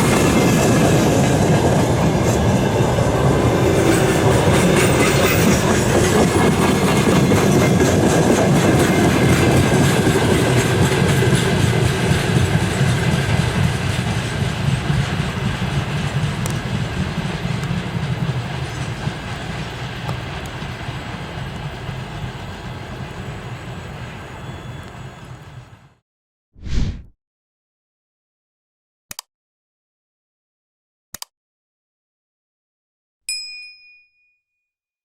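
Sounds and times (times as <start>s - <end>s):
train wheels clacking over rails: 0.0s - 24.9s.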